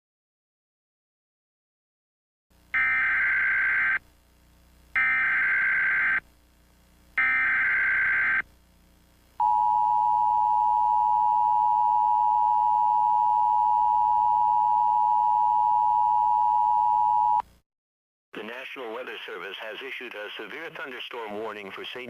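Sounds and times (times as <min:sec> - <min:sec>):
harsh digital data buzz: 0:02.8 - 0:04.0, 0:05.0 - 0:06.3, 0:07.2 - 0:08.5.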